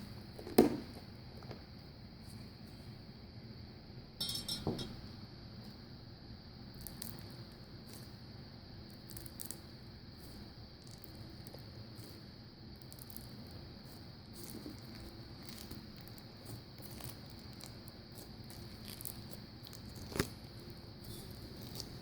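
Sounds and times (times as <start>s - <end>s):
crunchy slime crackling: 6.7s - 22.0s.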